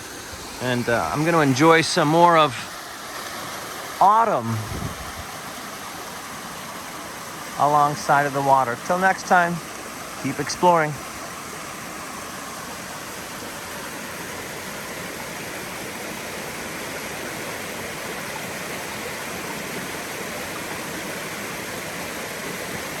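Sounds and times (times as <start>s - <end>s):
brook water over small waterfall: 0.0s - 23.0s.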